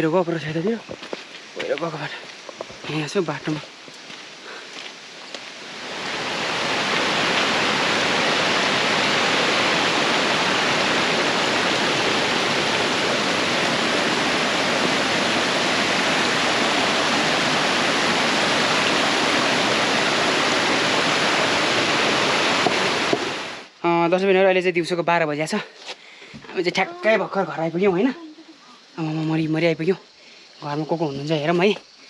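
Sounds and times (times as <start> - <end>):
rushing water of a stream: 0.1 - 23.8.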